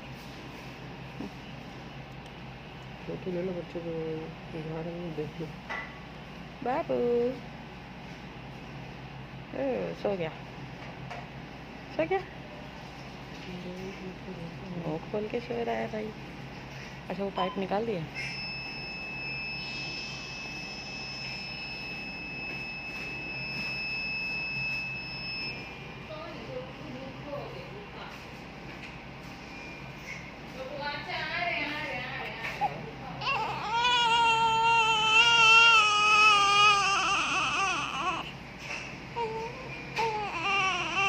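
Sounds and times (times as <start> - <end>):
high-pitched electronic whine: 18.2 - 25.8
newborn baby crying: 32.5 - 38.3, 39.2 - 41.0.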